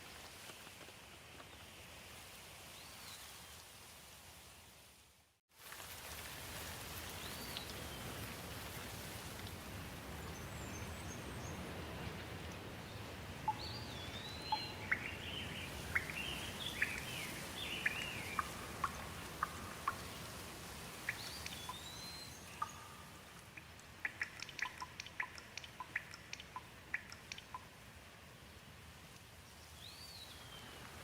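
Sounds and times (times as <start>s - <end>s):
rain hiss: 0.0s - 31.0s
birds chirping: 10.3s - 20.4s, 21.0s - 27.7s
sharp clicks: 23.3s - 27.7s.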